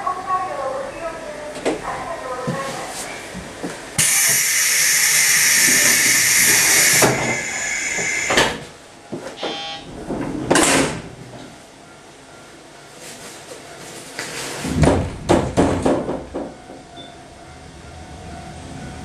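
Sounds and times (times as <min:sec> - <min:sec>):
compressed-air hiss: 0:04.0 - 0:08.6
door thud: 0:14.6 - 0:16.2.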